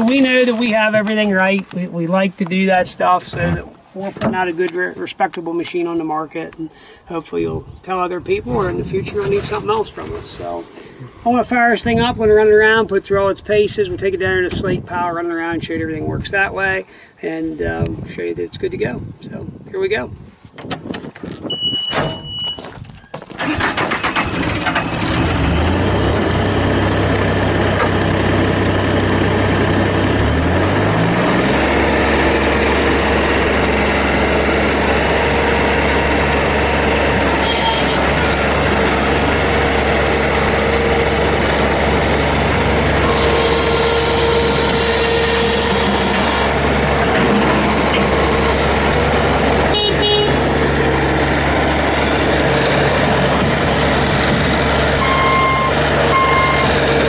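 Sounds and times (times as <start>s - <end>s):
diesel engine starting and revving: 8.4s - 12.8s, 23.3s - 57.0s.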